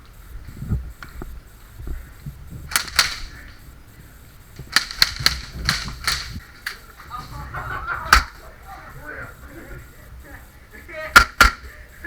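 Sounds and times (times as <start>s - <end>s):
airsoft gun shots: 2.7s - 3.6s, 4.6s - 6.8s, 8.0s - 8.5s, 11.1s - 11.7s.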